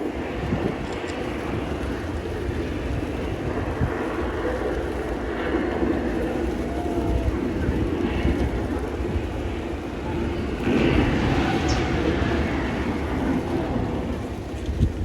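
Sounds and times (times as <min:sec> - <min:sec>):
rumbling roar: 0:06.0 - 0:15.0.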